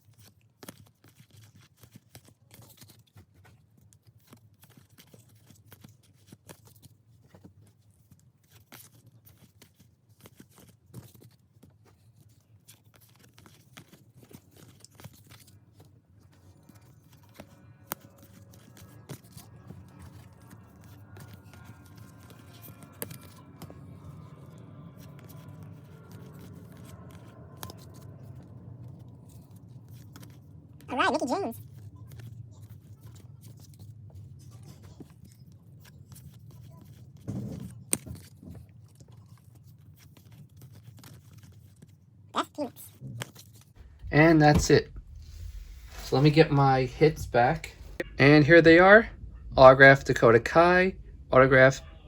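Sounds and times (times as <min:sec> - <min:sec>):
cards being flipped through: 0:08.0 - 0:23.7.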